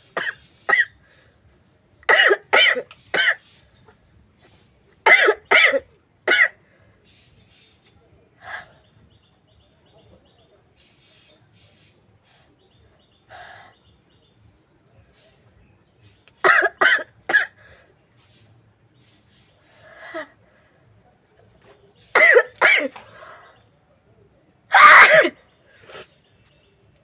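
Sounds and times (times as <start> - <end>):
woman coughing: 0.2 - 0.9, 2.1 - 3.4, 5.1 - 6.5, 16.5 - 17.6, 22.2 - 23.0, 24.8 - 25.4
woman sneezing: 24.8 - 25.3.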